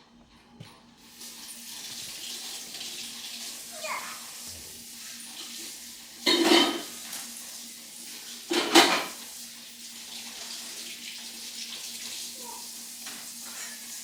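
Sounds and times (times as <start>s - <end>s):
kitchenware clattering: 5.3s - 7.1s, 8.5s - 9.3s.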